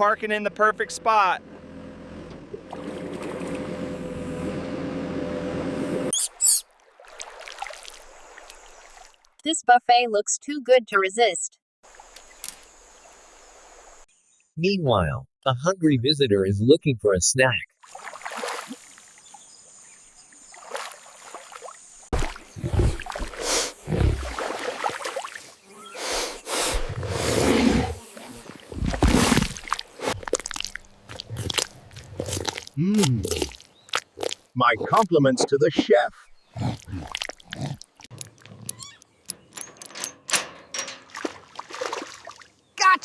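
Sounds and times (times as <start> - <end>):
vehicle engine humming: 0.0 - 6.1
water lapping and gurgling: 2.4 - 4.4, 6.6 - 9.4, 17.8 - 39.0, 41.0 - 42.7
short high squeaks: 6.1 - 6.7, 38.6 - 39.7
water splashing and surging: 6.6 - 9.4, 17.8 - 19.4, 20.2 - 25.7, 28.4 - 36.0, 36.8 - 38.5, 41.0 - 42.6.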